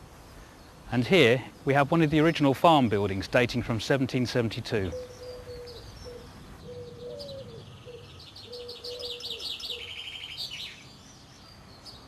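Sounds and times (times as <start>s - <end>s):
songbird chirping and trilling: 4.1s - 12.0s
low cooing: 4.9s - 10.0s.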